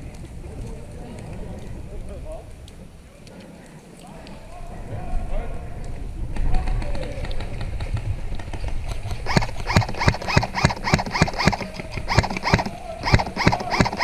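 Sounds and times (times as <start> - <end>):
quick footsteps: 7.4 - 14.0.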